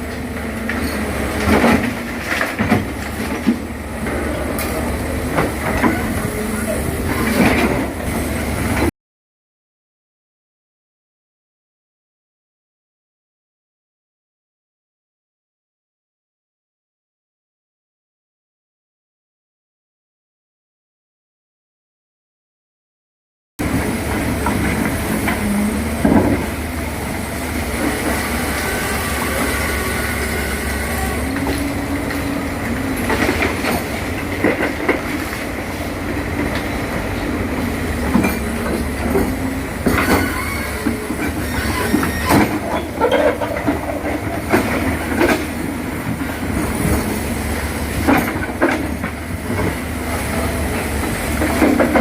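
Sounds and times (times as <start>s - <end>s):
excavator running: 0.0s - 8.9s, 23.6s - 52.0s.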